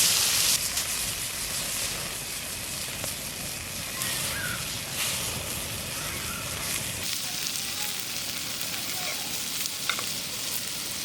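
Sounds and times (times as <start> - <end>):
food sizzling on a grill: 0.0 - 11.0.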